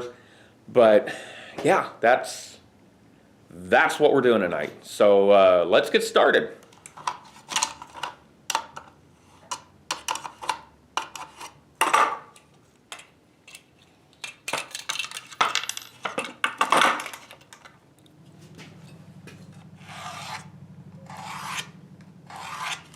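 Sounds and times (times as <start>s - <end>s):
metal parts clinking: 12.9s - 18.1s
steady low hum: 17.6s - 22.9s.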